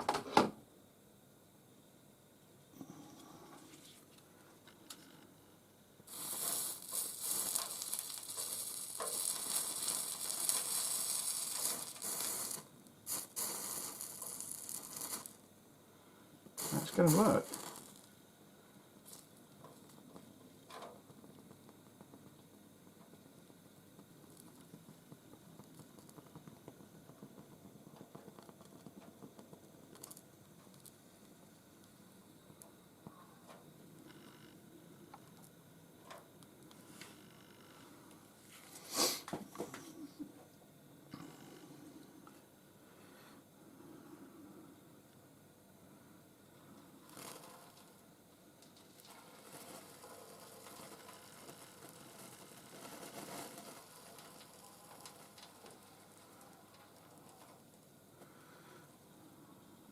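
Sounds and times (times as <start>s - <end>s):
solder flux sizzling: 0.0s - 59.9s
faint clicks and crackles: 2.8s - 5.4s, 6.1s - 15.6s, 16.4s - 18.2s, 18.9s - 38.3s, 46.4s - 59.8s.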